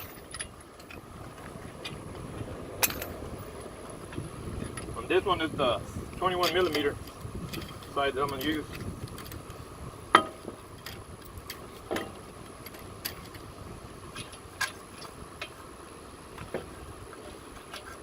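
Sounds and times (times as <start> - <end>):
wrench clinking on lug nuts: 2.8 - 3.3.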